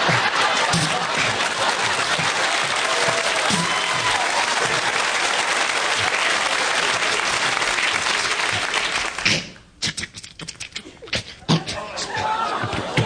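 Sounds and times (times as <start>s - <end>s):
audience applauding: 0.0s - 9.4s.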